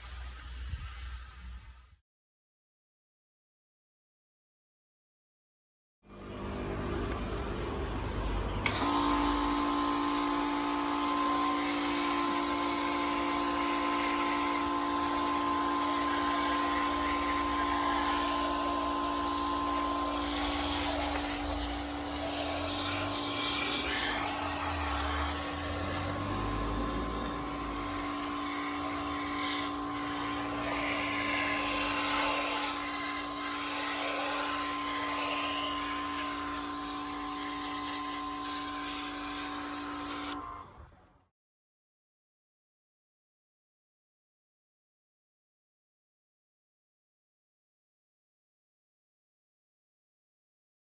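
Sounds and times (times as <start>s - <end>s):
pressure washer whine and spray: 8.6s - 40.6s.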